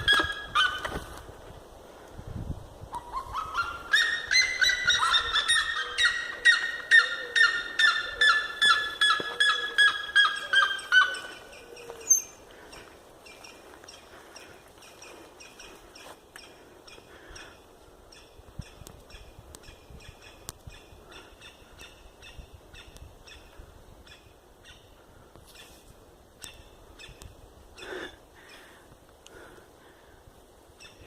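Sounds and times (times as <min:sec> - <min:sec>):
bird calling in rapid series: 0:02.9 - 0:12.5.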